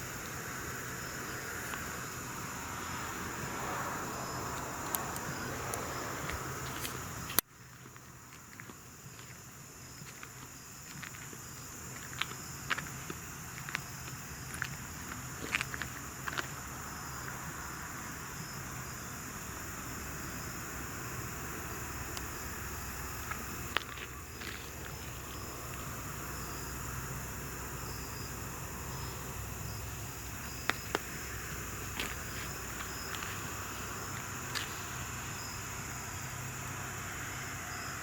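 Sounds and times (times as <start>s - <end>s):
insects trilling high: 0.0s - 38.0s
lower pulsing insect call: 0.0s - 38.0s.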